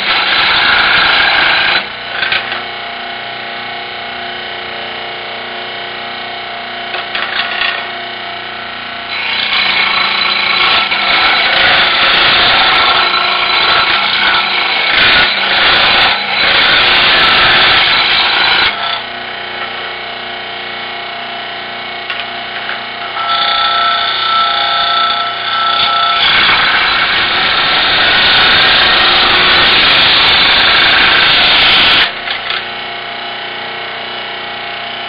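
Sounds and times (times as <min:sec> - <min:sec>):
saw blade rasping through wood: 0:00.0 - 0:02.4, 0:09.1 - 0:19.1, 0:23.0 - 0:32.7.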